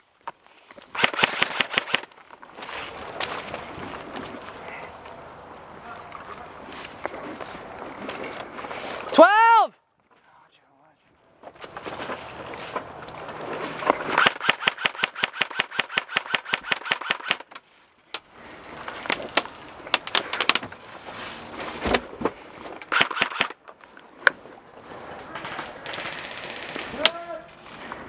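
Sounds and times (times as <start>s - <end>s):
airsoft gun firing: 1.0s - 2.1s, 14.2s - 17.5s, 22.9s - 23.6s
rustling: 11.4s - 14.2s, 17.3s - 22.9s.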